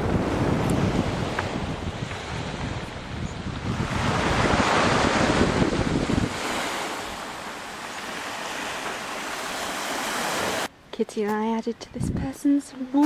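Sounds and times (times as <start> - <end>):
sea surf washing on shore: 0.0 - 10.7
wind buffeting microphone: 0.0 - 10.7, 11.8 - 13.0.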